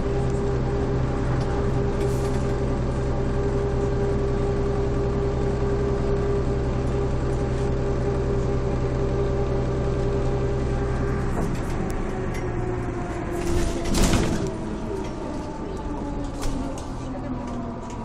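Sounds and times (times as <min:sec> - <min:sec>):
bus diesel engine droning: 0:00.0 - 0:18.0.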